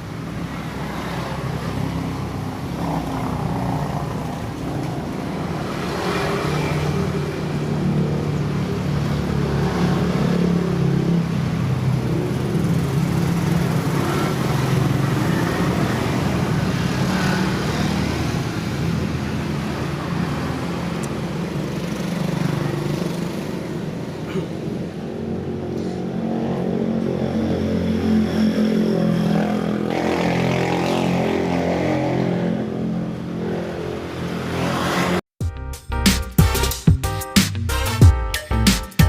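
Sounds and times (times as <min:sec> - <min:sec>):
vehicle engines running: 0:00.0 - 0:34.4
tyre and road noise: 0:00.0 - 0:35.3.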